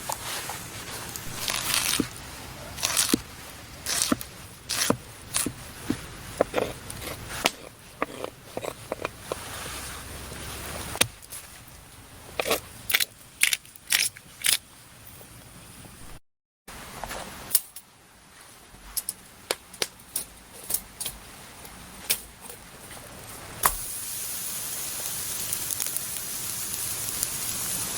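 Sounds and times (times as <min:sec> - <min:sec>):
sharp crunches and crackles: 0:00.0 - 0:15.4.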